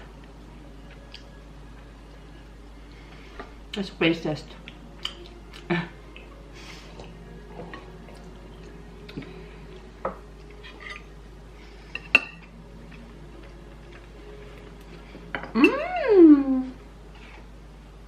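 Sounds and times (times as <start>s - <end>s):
faint steady hum: 0.0s - 18.0s
cutlery clinking on plates: 11.9s - 12.5s.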